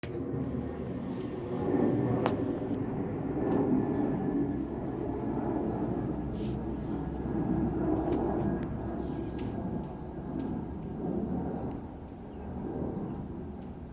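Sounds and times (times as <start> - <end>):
steady low rumble: 0.0 - 13.9
birds chirping: 0.9 - 13.9.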